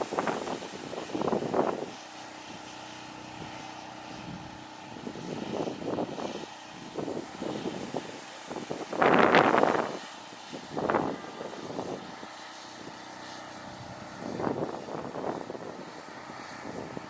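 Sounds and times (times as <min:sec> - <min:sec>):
wind buffeting microphone: 0:00.0 - 0:02.7, 0:03.3 - 0:17.0
engine drone: 0:00.0 - 0:17.0.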